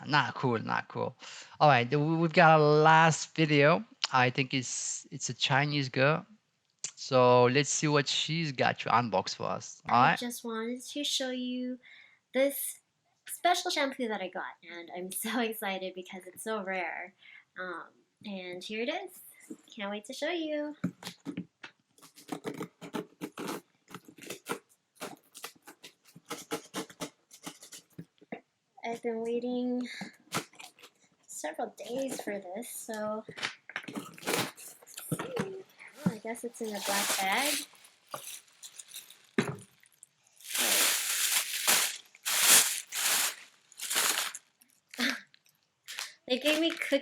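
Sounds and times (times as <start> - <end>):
packaging crinkling: 34.0 - 35.0, 36.0 - 47.0.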